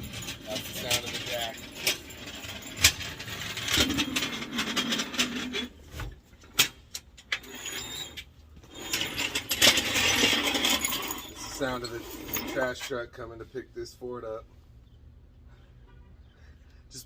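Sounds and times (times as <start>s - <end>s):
car jack ratcheting and creaking: 0.0s - 13.0s.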